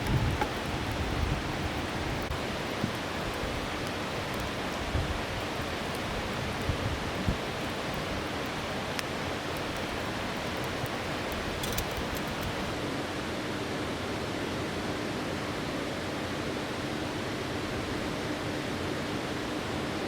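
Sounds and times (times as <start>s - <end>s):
faint light clicks: 0.0s - 12.8s
river water rushing over rocks: 0.0s - 12.8s.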